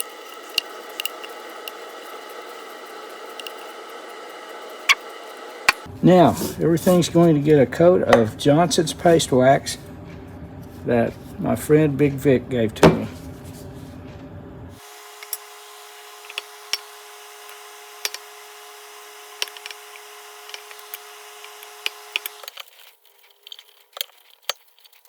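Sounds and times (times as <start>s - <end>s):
steady hum: 0.0s - 22.5s.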